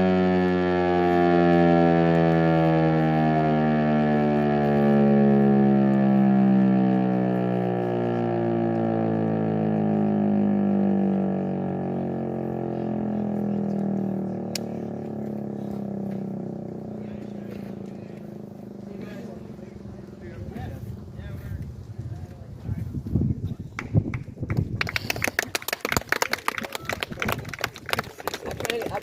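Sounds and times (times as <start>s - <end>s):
warning siren winding down: 0.0s - 21.5s.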